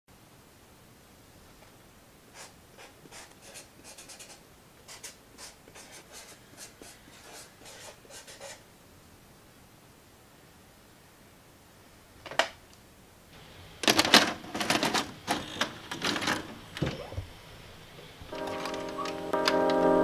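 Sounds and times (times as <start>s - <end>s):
faint scratching strokes: 2.4s - 8.6s.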